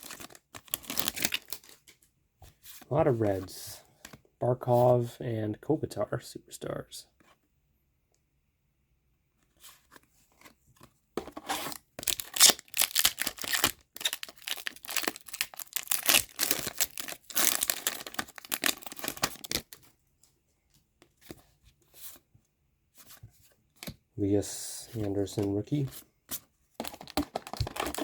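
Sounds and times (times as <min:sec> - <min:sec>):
wrapper tearing and crinkling: 0:00.0 - 0:01.8, 0:12.0 - 0:19.8, 0:26.8 - 0:28.0.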